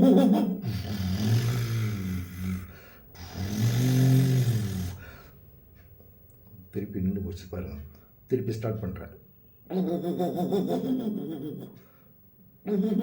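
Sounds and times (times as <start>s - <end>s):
man imitating sputtering engine: 0.0s - 5.0s.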